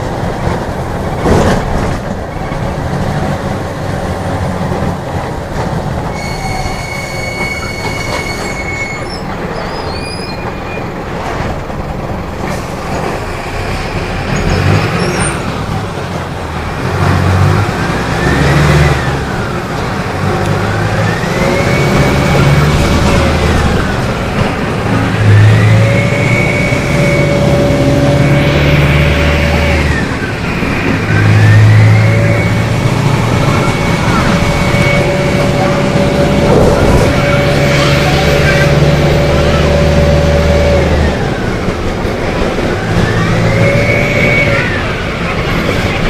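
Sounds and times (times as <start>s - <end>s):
bus diesel engine rumble: 0.0s - 46.0s
high steady whistle: 6.1s - 9.2s, 25.3s - 27.8s, 31.2s - 32.9s, 43.2s - 44.9s.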